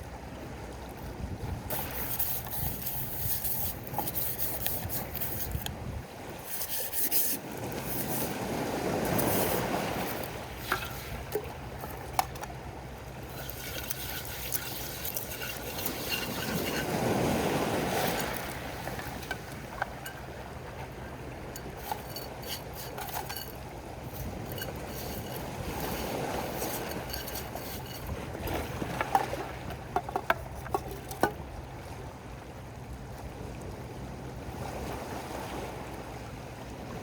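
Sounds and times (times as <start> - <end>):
sea waves washing in: 1.7 - 30.0
low wind rumble: 4.8 - 6.5.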